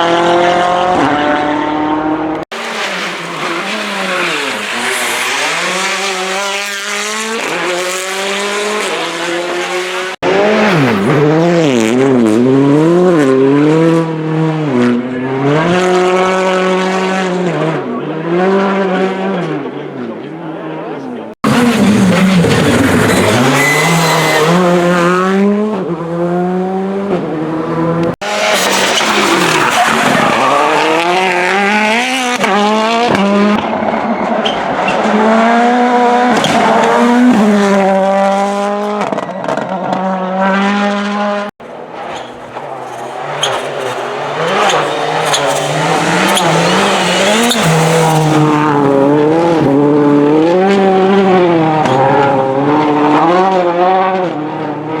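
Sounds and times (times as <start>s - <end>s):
rally car engines revving: 0.0s - 55.0s
tyre squeal: 21.5s - 25.2s, 42.0s - 49.6s.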